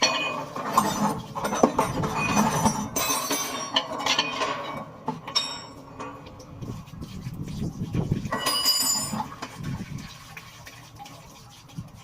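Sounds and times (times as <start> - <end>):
metal tools clinking and knocking: 0.0 - 6.2, 8.3 - 9.4.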